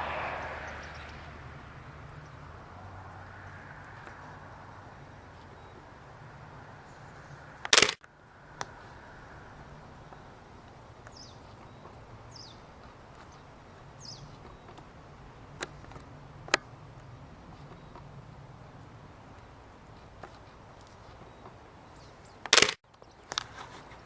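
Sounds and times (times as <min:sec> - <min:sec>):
bird calls: 0:11.0 - 0:14.8.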